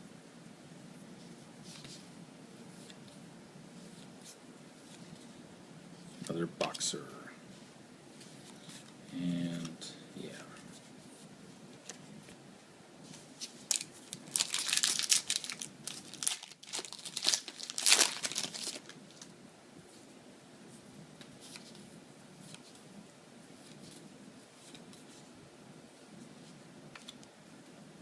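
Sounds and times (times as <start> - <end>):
foil wrapper crinkling and tearing: 13.7 - 19.3.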